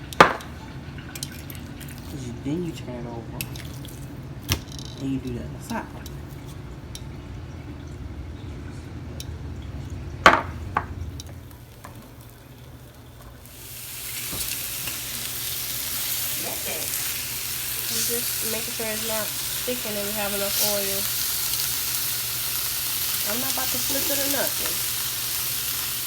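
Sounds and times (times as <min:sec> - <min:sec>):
cookware knocks: 0:00.2 - 0:00.6, 0:10.3 - 0:11.0
chicken sizzling in oil: 0:10.6 - 0:26.0.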